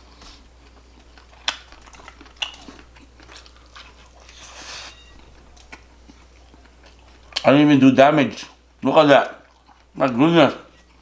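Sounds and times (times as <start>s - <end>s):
person chewing food: 0.0s - 7.5s, 9.4s - 10.0s.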